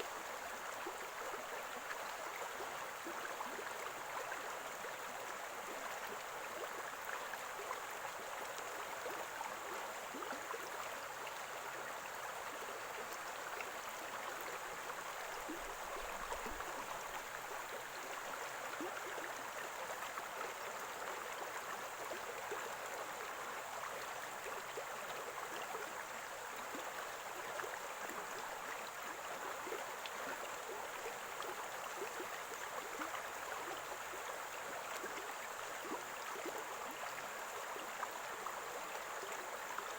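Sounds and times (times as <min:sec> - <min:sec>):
small stream gurgling: 0:00.0 - 0:39.9.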